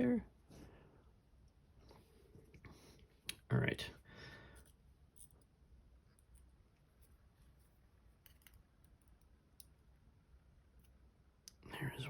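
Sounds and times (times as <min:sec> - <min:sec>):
small metal parts clicking: 0:08.2 - 0:09.8.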